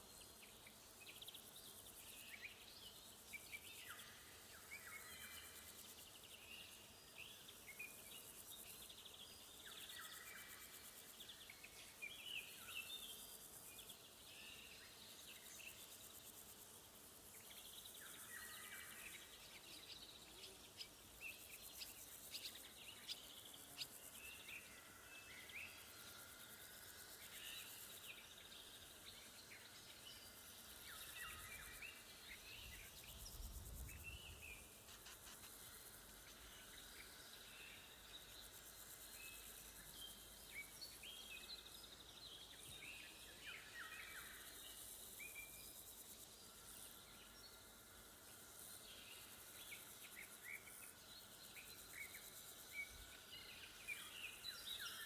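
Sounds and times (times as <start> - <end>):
crickets trilling: 17.8 - 55.0.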